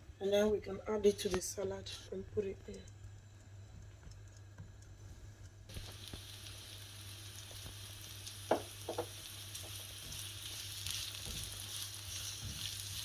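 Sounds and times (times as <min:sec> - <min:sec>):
vegetables sizzling in frying pan: 0:05.7 - 0:13.0
utensil knocking against pan: 0:08.5 - 0:09.1.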